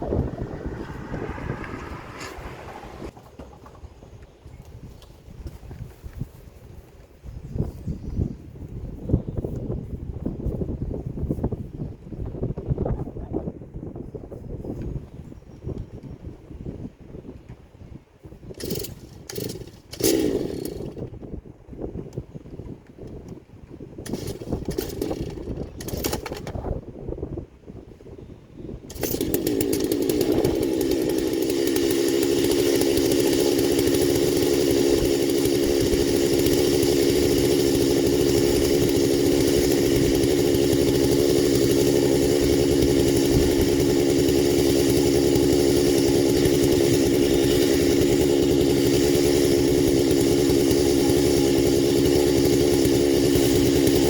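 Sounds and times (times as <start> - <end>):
chainsaw cutting log: 0.0 - 3.4, 18.5 - 21.2, 24.0 - 26.7, 28.9 - 54.0.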